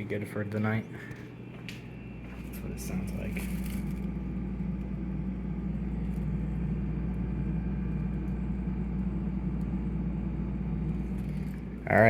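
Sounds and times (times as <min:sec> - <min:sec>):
refrigerator compressor humming: 0:00.0 - 0:12.0.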